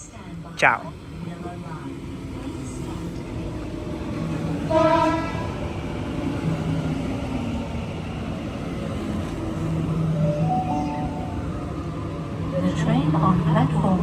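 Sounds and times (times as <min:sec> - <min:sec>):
train motor hum: 0:00.0 - 0:14.0
train horn blast: 0:04.6 - 0:05.7.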